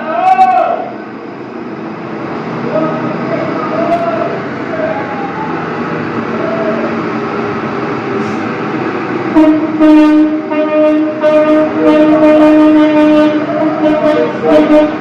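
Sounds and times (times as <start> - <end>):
street and vehicle rumble: 0.0 - 15.0
loud horn blaring: 9.3 - 15.0.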